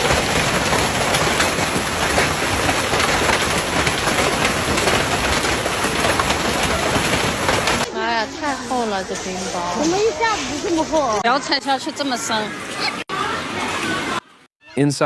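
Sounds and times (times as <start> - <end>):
hailstones clattering: 0.0 - 10.8.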